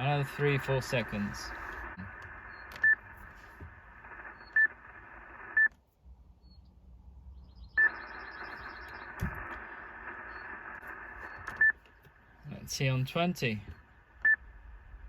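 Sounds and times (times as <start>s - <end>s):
radio band hiss: 0.0s - 5.6s, 7.8s - 11.6s.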